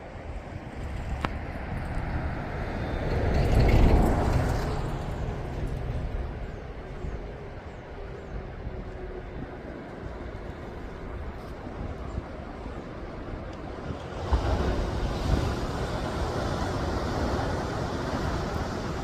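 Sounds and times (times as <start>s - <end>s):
wind buffeting microphone: 0.0s - 19.0s
waves crashing on shore: 13.3s - 19.0s.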